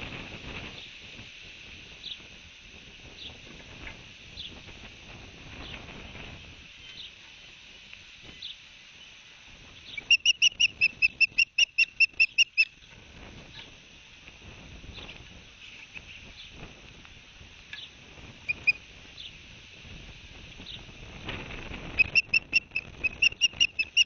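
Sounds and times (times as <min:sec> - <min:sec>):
steady hiss: 0:00.0 - 0:24.0
bird whistled chirps: 0:09.9 - 0:12.7, 0:22.0 - 0:24.0.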